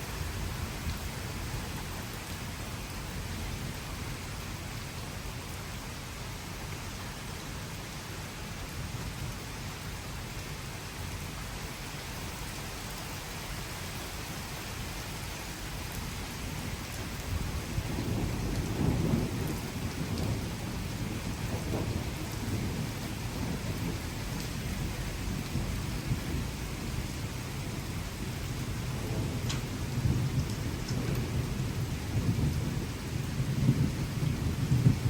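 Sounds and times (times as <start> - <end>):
steady rain: 0.0 - 35.0
thunder rumbling: 16.5 - 35.0.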